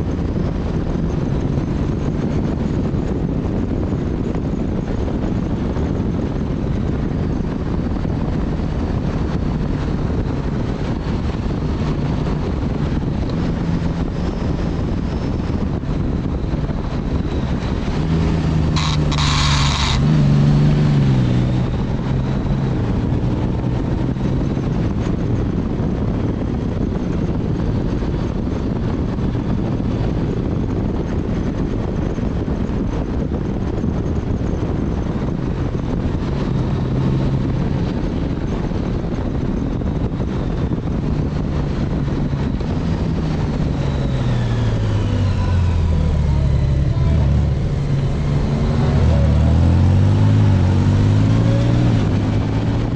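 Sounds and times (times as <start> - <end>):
motorcycle engine drone: 0.0 - 52.9
wind rush: 0.0 - 52.9
passing vehicle engine: 6.7 - 30.6, 39.8 - 52.9.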